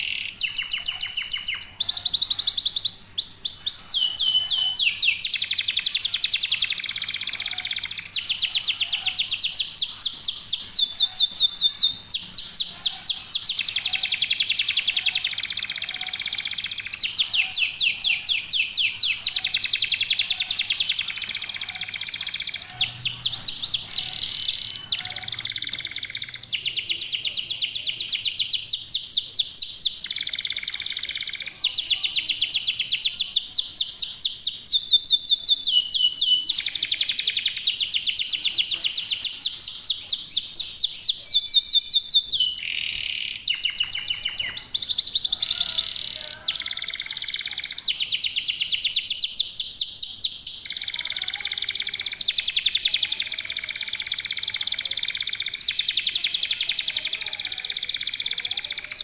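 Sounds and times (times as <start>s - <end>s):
canary singing trills: 0.0s - 59.0s.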